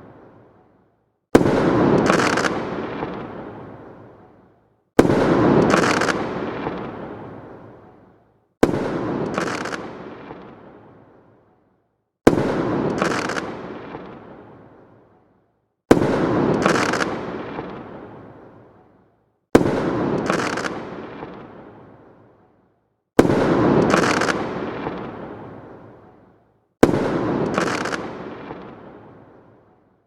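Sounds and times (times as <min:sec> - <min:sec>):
firework sparkling crackle: 0:09.2 - 0:10.6, 0:12.8 - 0:14.3, 0:27.2 - 0:28.9.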